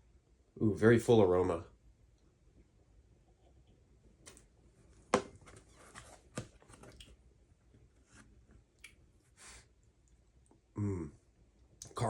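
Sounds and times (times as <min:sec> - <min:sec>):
soft rustles: 0:04.3 - 0:07.0.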